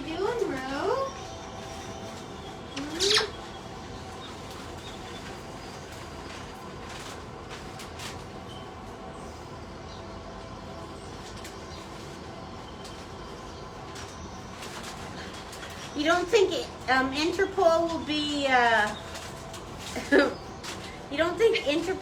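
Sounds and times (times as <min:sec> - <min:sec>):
steady background hum: 0:00.0 - 0:22.0
parrot squawk: 0:02.8 - 0:03.5.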